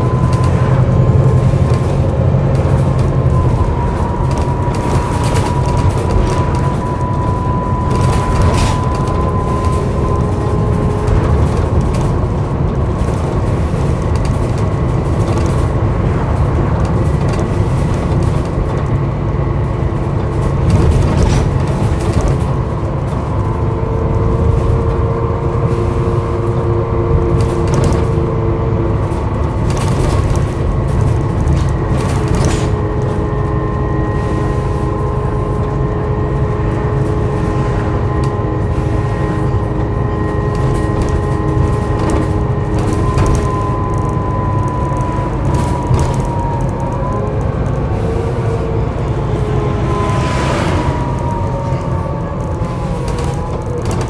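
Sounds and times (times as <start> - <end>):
body knocks and rattles: 0.0 - 24.9, 27.2 - 33.6, 39.6 - 47.0, 52.4 - 54.0
bus engine rumble and drone: 0.0 - 54.0.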